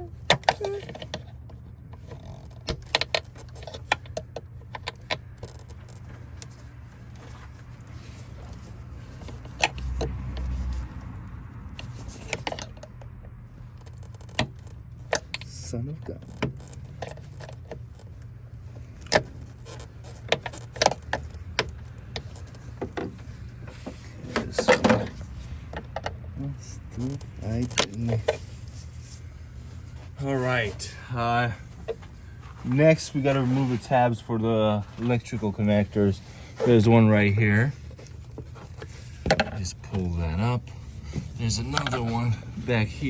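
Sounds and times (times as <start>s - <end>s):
steady low hum: 10.4s - 43.0s.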